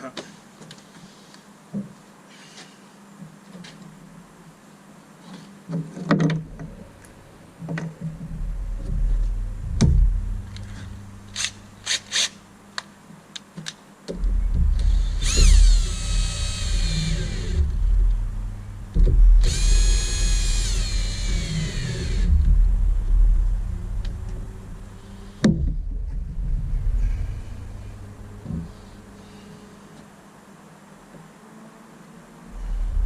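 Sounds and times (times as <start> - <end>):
power drill whining: 11.4 - 12.4, 14.8 - 17.9, 19.4 - 22.4.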